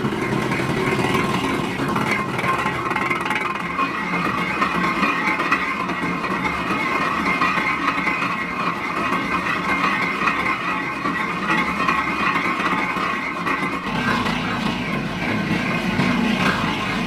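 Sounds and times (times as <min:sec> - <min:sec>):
factory machinery running: 0:12.8 - 0:17.0.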